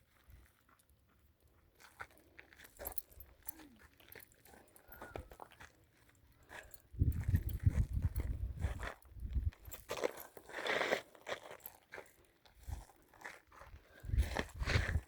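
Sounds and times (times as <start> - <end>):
footsteps crunching on gravel: 6.5 - 15.0.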